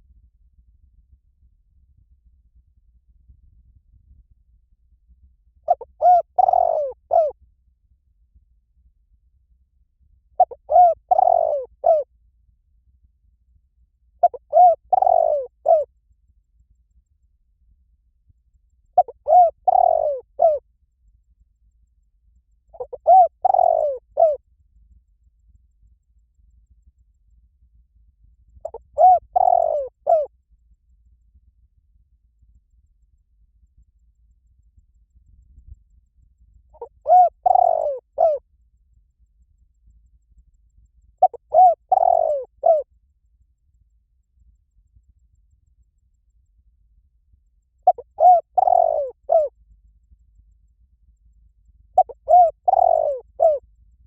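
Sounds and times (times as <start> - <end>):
dove cooing: 5.7 - 7.4, 10.4 - 12.1, 14.2 - 15.9, 19.0 - 20.6, 22.8 - 24.4, 28.6 - 30.3, 36.8 - 38.4, 41.2 - 42.9, 47.8 - 49.5, 52.0 - 53.6.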